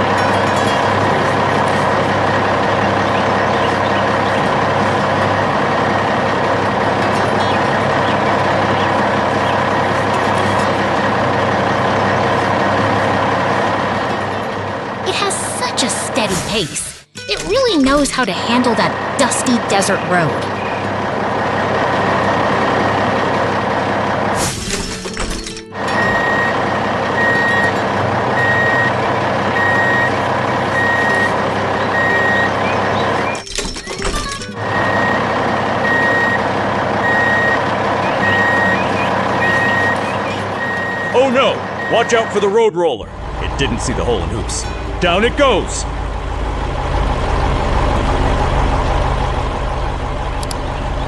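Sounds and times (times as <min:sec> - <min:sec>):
dump truck engine running: 0:00.0 - 0:51.0
reversing alarm beeping: 0:25.8 - 0:42.6.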